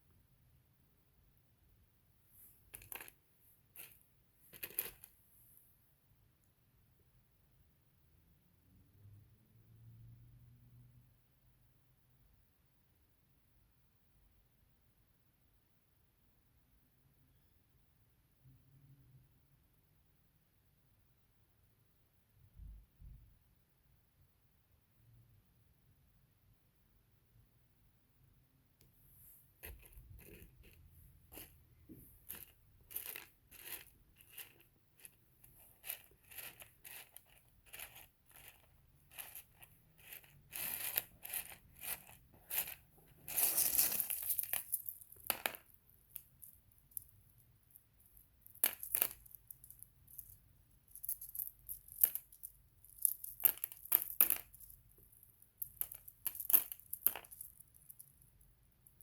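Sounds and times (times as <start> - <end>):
stones clicking and rattling: 2.6 - 5.2, 29.6 - 59.0.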